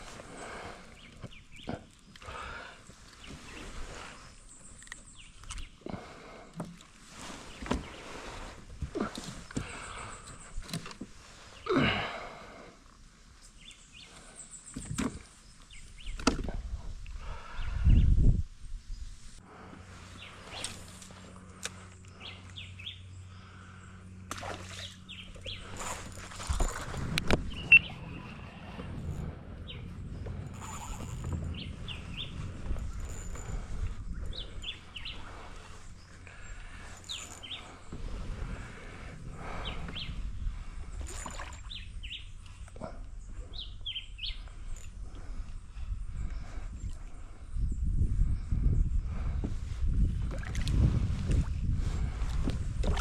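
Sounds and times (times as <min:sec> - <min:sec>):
birds chirping: 0:00.0 - 0:18.3, 0:18.9 - 0:49.5
low hum: 0:14.2 - 0:53.0
steady low rumble: 0:16.5 - 0:53.0
bird chirping: 0:24.8 - 0:25.8, 0:27.4 - 0:28.9, 0:30.5 - 0:37.8, 0:41.6 - 0:44.8.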